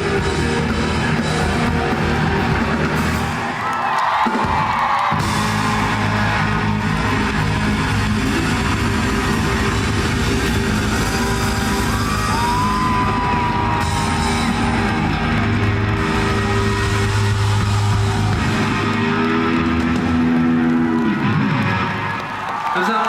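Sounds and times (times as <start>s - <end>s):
rock band playing live: 0.0s - 22.4s
electric guitar: 4.2s - 22.4s.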